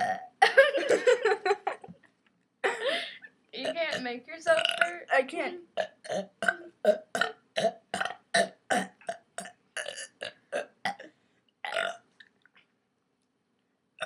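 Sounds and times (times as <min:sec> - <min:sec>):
girl burping: 0:00.0 - 0:01.2, 0:02.6 - 0:05.2, 0:05.8 - 0:11.1, 0:11.7 - 0:12.0.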